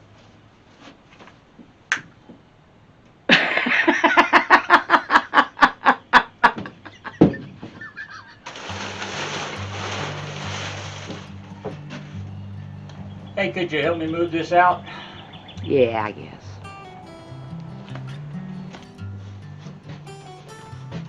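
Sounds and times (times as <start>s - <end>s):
rapid laughing: 3.3s - 8.6s
blues music with bass line: 8.7s - 21.0s.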